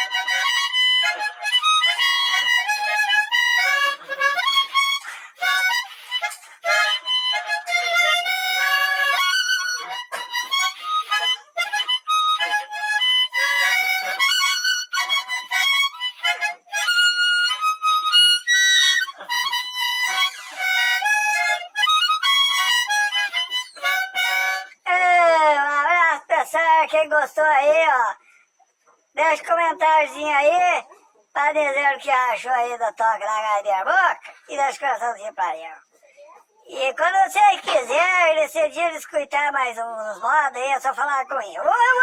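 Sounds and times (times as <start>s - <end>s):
harmonica playing: 0.0s - 25.4s.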